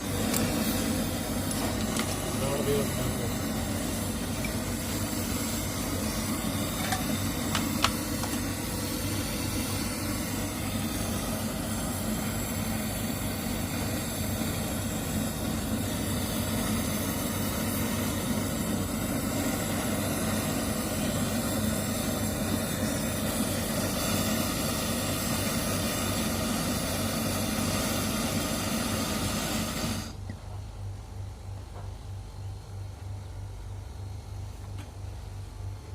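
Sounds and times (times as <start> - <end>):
machine hum with hiss: 0.0 - 35.9.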